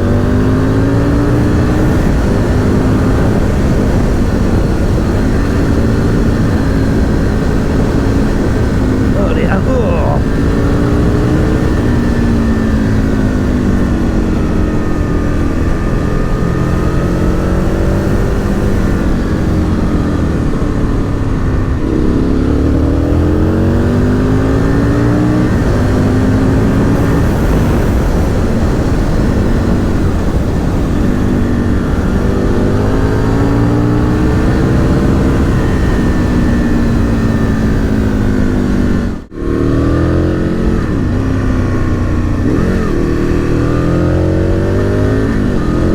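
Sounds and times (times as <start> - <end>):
motorcycle engine revving: 0.0 - 45.9.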